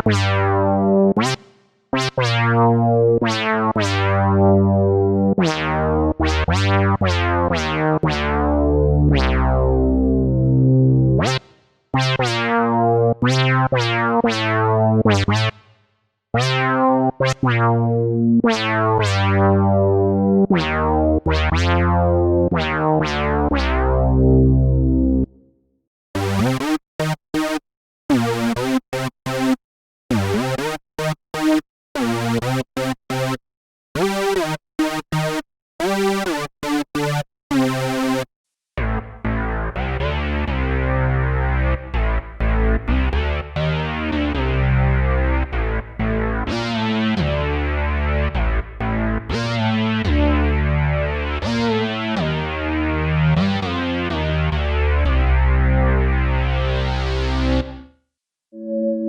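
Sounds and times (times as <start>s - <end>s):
sustained synth bass notes: 2.0s - 11.4s, 12.0s - 15.5s, 16.4s - 25.3s, 38.8s - 57.9s
synthesizer plucked chords: 2.0s - 11.4s, 12.0s - 15.5s, 16.4s - 25.3s, 38.8s - 57.9s, 58.6s - 59.0s.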